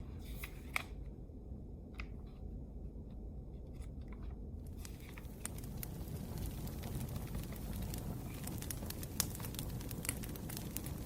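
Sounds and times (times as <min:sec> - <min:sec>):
low steady fire rumble: 0:01.3 - 0:11.0
wood fire crackling: 0:04.6 - 0:11.0.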